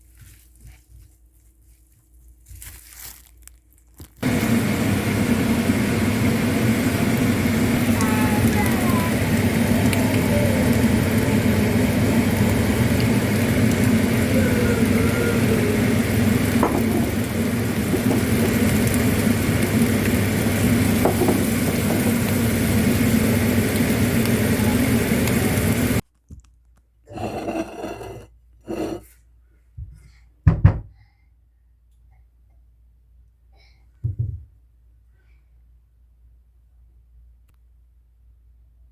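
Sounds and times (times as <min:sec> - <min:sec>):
rice frying in a pan: 0:02.6 - 0:26.0
low hum: 0:04.2 - 0:20.9.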